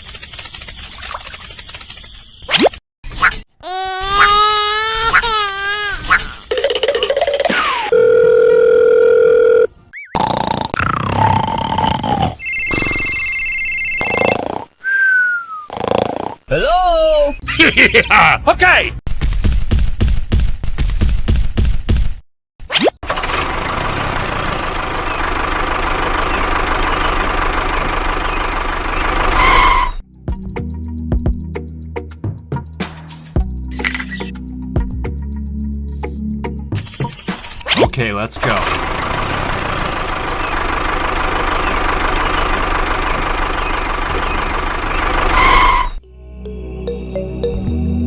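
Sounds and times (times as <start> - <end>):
small engine knocking rattle: 0.0 - 2.2
small engine running: 0.0 - 2.3, 23.0 - 29.9, 38.4 - 46.0
background music with steady beat: 30.1 - 36.7.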